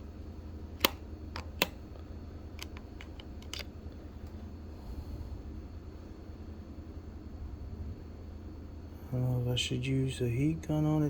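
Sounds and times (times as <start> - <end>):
low steady hum: 0.0 - 11.0
small plastic parts clicking: 2.6 - 3.7.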